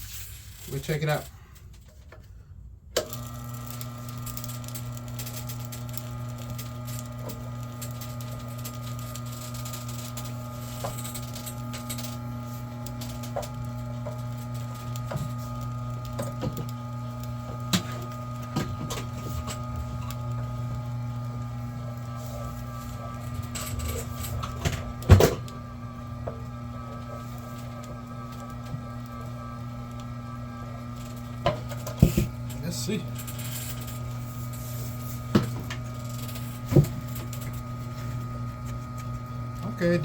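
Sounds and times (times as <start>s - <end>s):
wire stripping machine motor hum: 3.0s - 40.0s.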